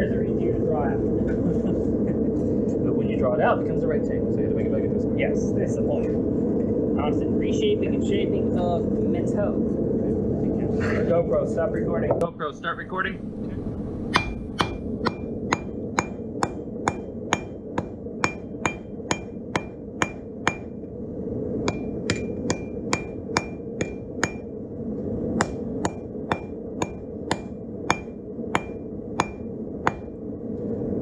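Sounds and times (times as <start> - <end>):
hammer striking steel on anvil: 12.2 - 20.9, 21.7 - 24.6, 25.4 - 30.2
steady rushing noise: 12.2 - 30.2.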